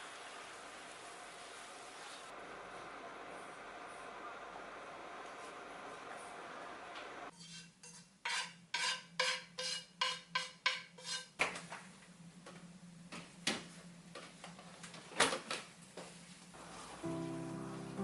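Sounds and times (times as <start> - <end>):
utensil scraping in a bowl: 7.3 - 11.4
soft music: 16.6 - 18.0.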